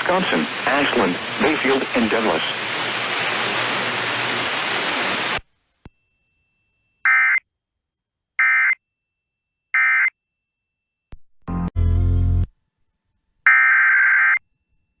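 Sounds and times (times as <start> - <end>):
radio static hiss: 0.0 - 5.4.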